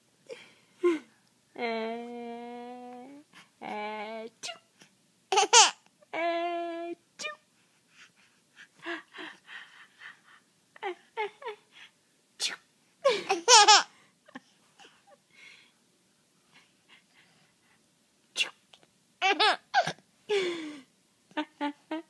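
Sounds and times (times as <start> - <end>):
baby laughing and squealing: 5.3 - 5.8, 13.3 - 13.9.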